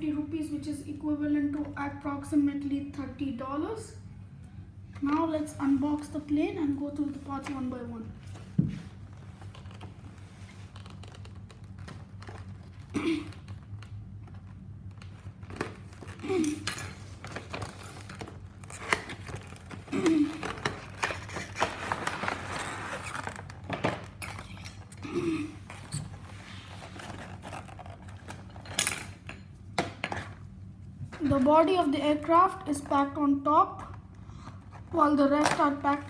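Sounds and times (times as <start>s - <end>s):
steady low hum: 0.0s - 36.0s
packaging crinkling and rustling: 8.3s - 24.9s, 25.6s - 28.8s
knocks on cardboard box: 8.6s - 8.8s.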